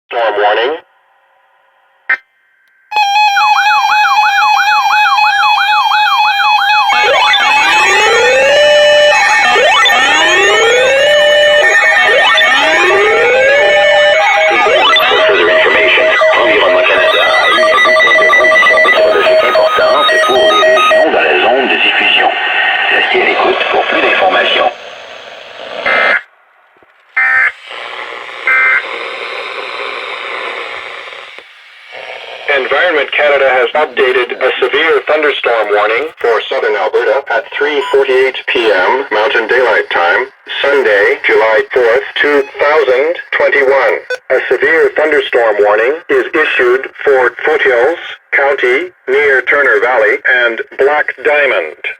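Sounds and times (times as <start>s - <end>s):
harsh digital data bursts: 6.8s - 21.4s, 22.6s - 26.3s
warbling alert tone: 9.6s - 21.2s
radio hiss: 9.7s - 26.3s, 27.0s - 51.9s.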